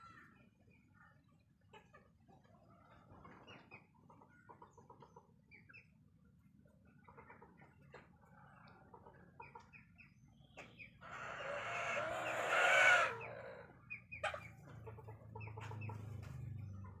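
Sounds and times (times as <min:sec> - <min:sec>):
chickens clucking: 0:00.0 - 0:17.0
chicken long loud call: 0:11.0 - 0:13.7.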